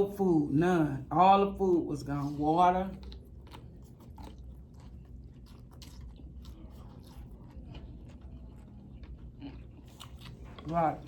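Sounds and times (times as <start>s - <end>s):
low steady hum: 0.0s - 11.0s
chewing and wet mouth clicks: 2.9s - 11.0s.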